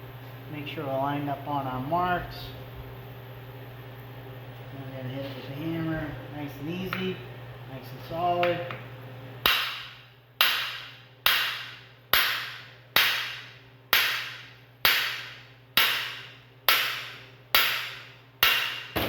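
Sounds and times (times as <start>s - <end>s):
hammer striking metal bar: 9.4s - 19.0s.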